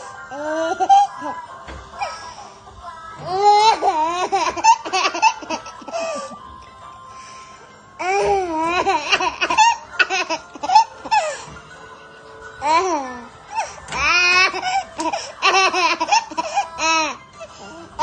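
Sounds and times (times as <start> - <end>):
baby laughing: 0.3 - 1.4, 3.2 - 6.4, 8.0 - 11.5, 12.6 - 18.0.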